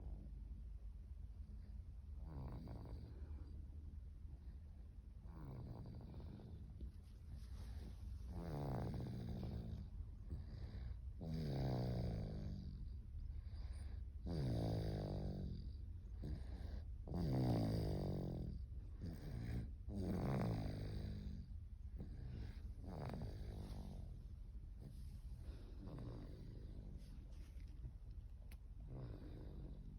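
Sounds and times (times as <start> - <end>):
baby snoring: 7.5 - 15.4, 16.1 - 29.9.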